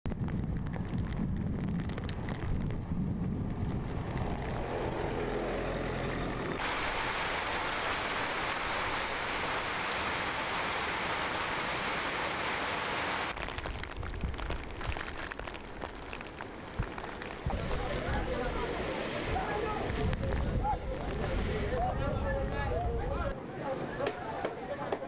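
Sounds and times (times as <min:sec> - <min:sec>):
low rumble: 0:00.1 - 0:06.6
heavy rain pouring: 0:06.6 - 0:21.9.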